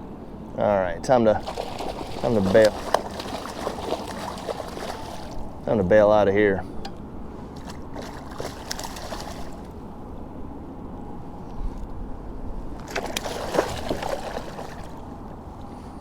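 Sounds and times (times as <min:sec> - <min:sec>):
water lapping around a kayak: 0:01.4 - 0:05.7, 0:07.3 - 0:09.9, 0:12.8 - 0:16.0.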